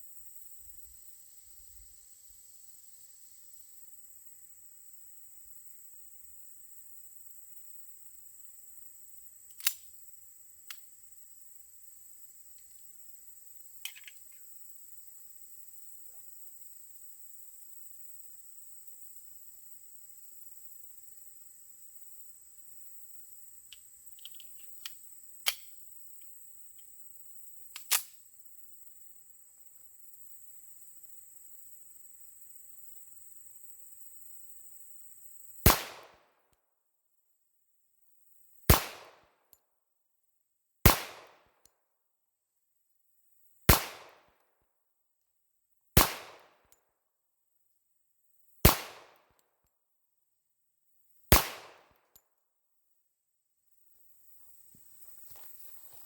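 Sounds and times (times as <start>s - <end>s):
sharp clicks: 24.2s - 25.7s, 27.8s - 28.1s
pistol shots: 35.7s - 36.2s, 38.7s - 39.2s, 40.9s - 41.4s, 43.7s - 44.2s, 46.0s - 46.5s, 48.7s - 49.2s, 51.3s - 51.8s.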